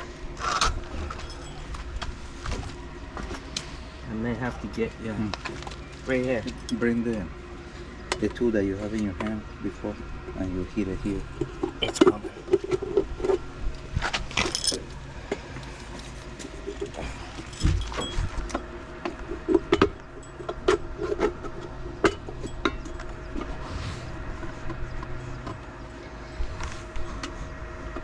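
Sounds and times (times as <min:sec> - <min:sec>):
steady low hum: 0:00.0 - 0:28.0
hand tools clicking and knocking: 0:14.1 - 0:23.1.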